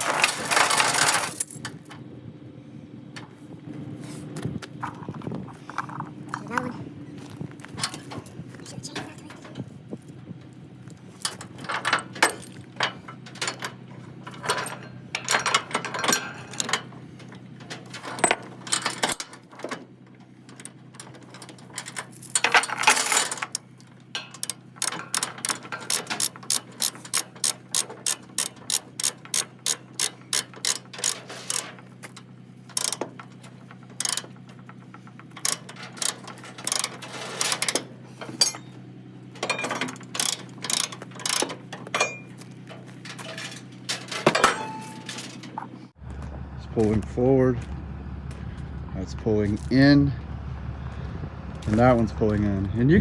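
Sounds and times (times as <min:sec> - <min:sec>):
chain clattering: 0:00.0 - 0:01.9, 0:11.2 - 0:16.9, 0:17.6 - 0:19.5, 0:20.6 - 0:38.8, 0:39.4 - 0:45.6
ratchet pawl clicking: 0:24.4 - 0:31.6, 0:32.7 - 0:33.0, 0:34.0 - 0:34.3, 0:35.4 - 0:37.8, 0:40.2 - 0:41.5.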